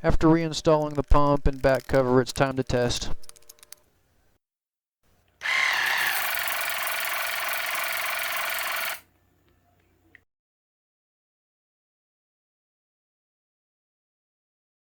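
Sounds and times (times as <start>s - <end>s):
water flosser pump buzzing: 5.4s - 9.0s.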